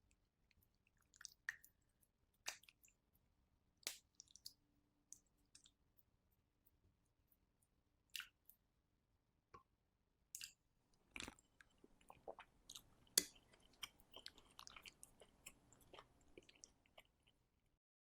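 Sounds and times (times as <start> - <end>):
chewing with small clicks: 0.1 - 3.2, 3.8 - 5.8, 8.1 - 8.6, 10.4 - 17.4.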